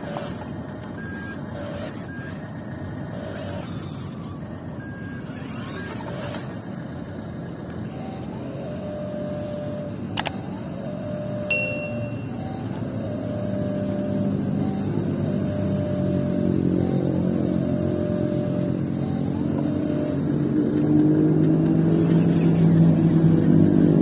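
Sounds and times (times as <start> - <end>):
whir of small electric motors: 0.0 - 2.5, 3.1 - 6.8
short electronic beeps: 1.0 - 1.4, 11.5 - 12.8.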